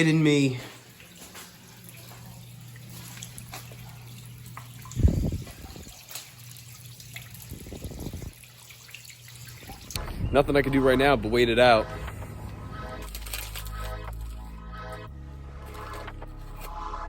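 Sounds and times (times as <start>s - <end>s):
water trickling and dripping: 0.0s - 10.1s
steady low hum: 9.8s - 16.8s.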